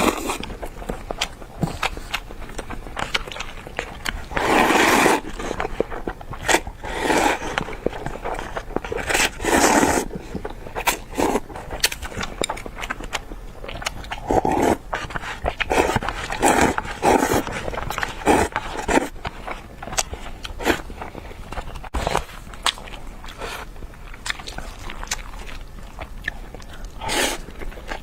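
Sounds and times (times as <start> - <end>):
person slurping: 4.3 - 5.6, 6.5 - 7.6, 9.0 - 11.4, 14.1 - 19.1, 27.0 - 27.5.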